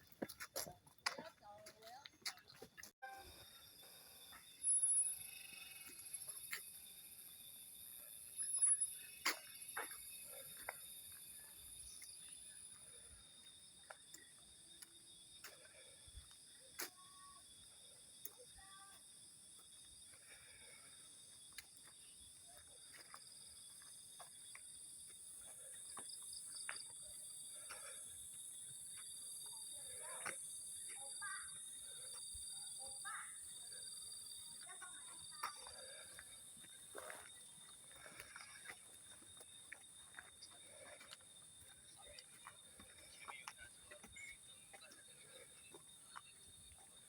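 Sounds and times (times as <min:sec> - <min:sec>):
high-pitched insect drone: 0:03.0 - 0:15.3
thin steady tone: 0:03.0 - 0:39.5
insects chorus: 0:03.0 - 0:47.0.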